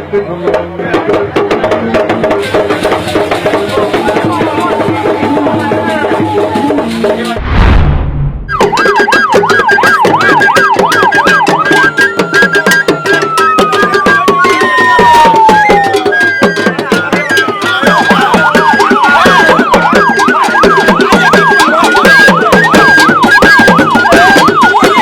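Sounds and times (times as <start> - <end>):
drums beating steadily: 0.0 - 7.4, 8.5 - 25.0
warbling siren: 8.4 - 25.0.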